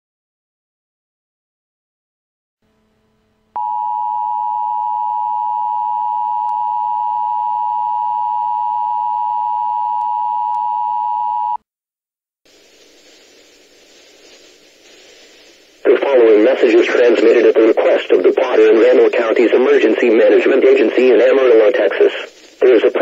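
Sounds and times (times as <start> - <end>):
faint hum: 2.7 - 11.6, 12.5 - 23.0
broadcast audio hiss: 12.5 - 23.0.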